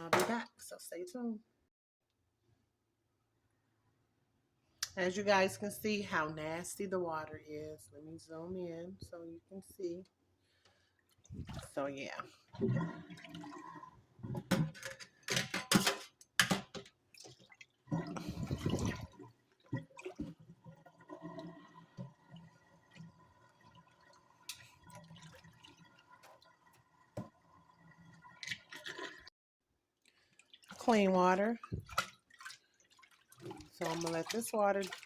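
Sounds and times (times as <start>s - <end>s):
water splashing in a sink: 10.7s - 29.3s, 30.0s - 35.0s
water dripping: 17.1s - 29.3s, 30.0s - 35.0s.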